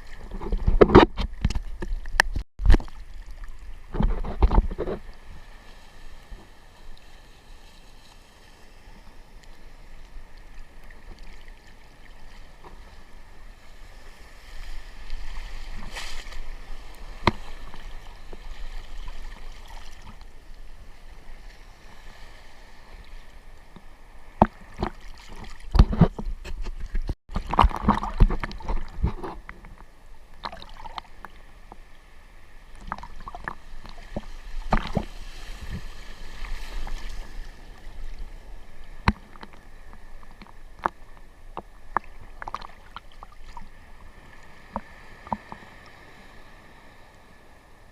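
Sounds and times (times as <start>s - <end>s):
sea water sloshing and splashing: 0.0s - 47.6s
sharp splashes and knocks: 0.2s - 5.0s, 24.4s - 29.4s, 32.8s - 37.2s.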